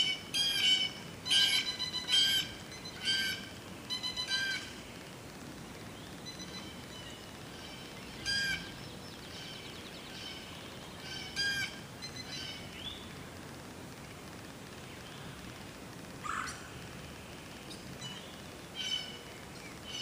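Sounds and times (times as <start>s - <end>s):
bird chirps and trill: 0.0s - 4.8s, 5.9s - 13.0s
harsh bird calls: 0.0s - 4.9s, 5.9s - 13.1s
outdoor hiss: 0.0s - 20.0s.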